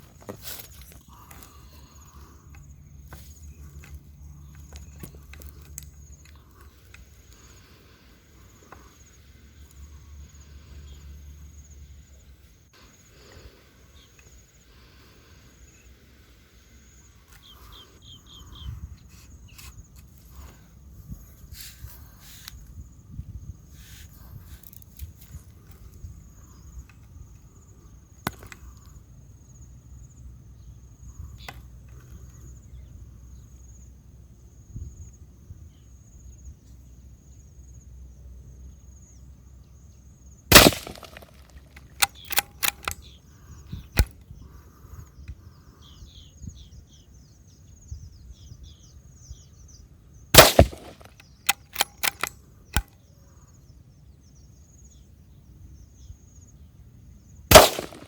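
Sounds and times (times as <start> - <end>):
rifle shots: 40.5 - 41.5, 50.4 - 52.3, 57.5 - 58.0
rifle bolt clicks: 40.5 - 43.0, 50.4 - 52.9, 57.5 - 58.0.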